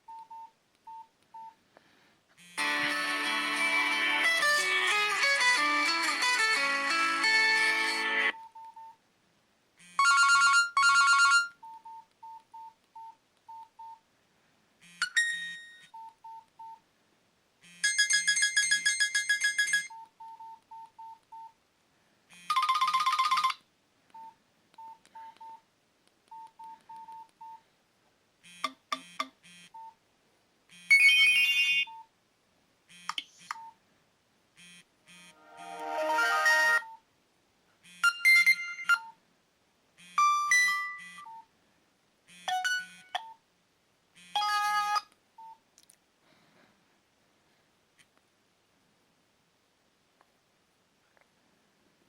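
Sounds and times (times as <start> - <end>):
phone ringtone melodies: 2.4 - 8.4, 9.9 - 11.5, 17.7 - 19.9, 22.4 - 23.6, 30.8 - 31.9, 35.2 - 37.0, 40.2 - 41.3, 42.4 - 43.2, 44.3 - 45.1.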